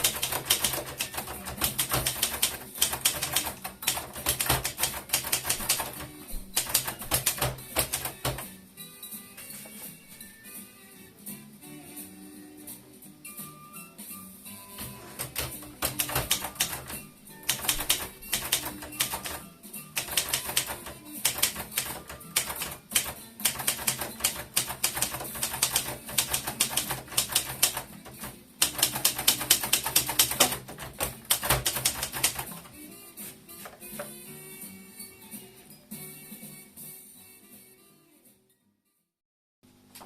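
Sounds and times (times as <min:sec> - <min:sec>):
typewriter key strikes: 0:00.0 - 0:08.5, 0:14.8 - 0:19.4, 0:20.0 - 0:32.7
background music: 0:00.0 - 0:39.1.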